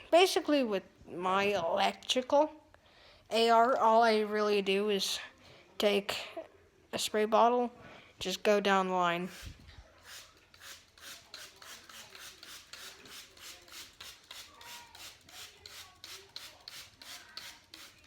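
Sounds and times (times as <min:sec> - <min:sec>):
spray bottle hissing sprays: 0:09.3 - 0:18.0.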